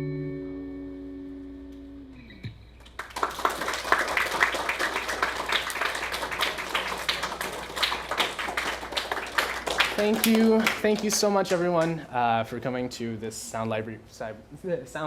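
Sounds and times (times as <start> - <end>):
audience applauding: 2.8 - 12.0.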